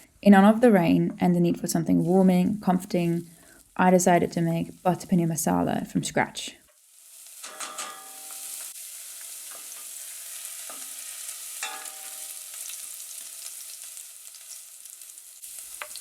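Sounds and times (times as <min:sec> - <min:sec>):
food sizzling in oil: 0:01.7 - 0:05.9, 0:06.6 - 0:16.0
utensil clinking against pan: 0:07.4 - 0:08.6, 0:11.6 - 0:12.4.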